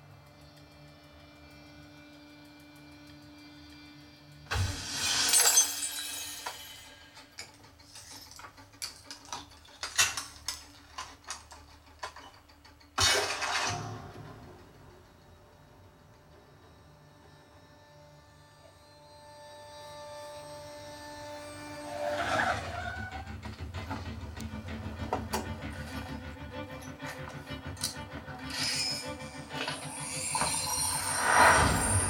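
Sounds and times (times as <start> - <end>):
sustained orchestral drone: 6.9 - 32.0.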